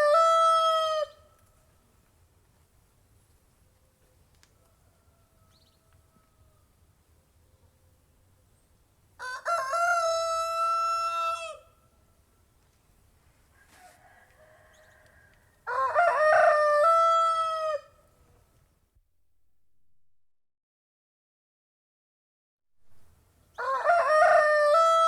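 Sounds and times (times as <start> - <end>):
rooster crowing: 0.0 - 1.2, 4.6 - 6.7, 9.2 - 11.7, 13.5 - 18.0, 23.6 - 25.0.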